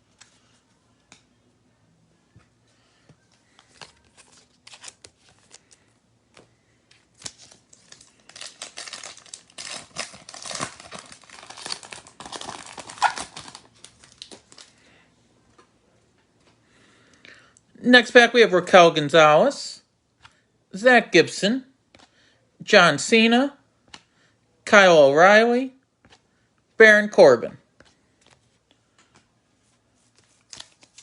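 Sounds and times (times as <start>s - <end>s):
wrapper tearing and crinkling: 7.2s - 14.7s.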